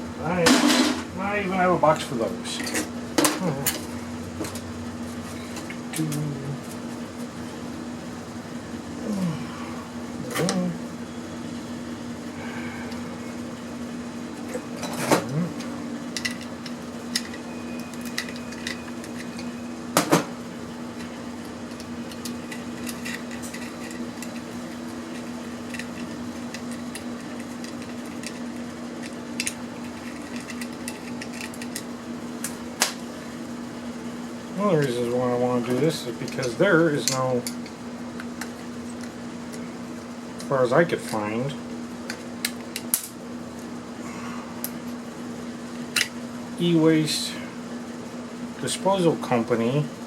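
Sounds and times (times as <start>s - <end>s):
steady low hum: 0.0s - 50.0s
small parts clinking: 16.2s - 19.5s.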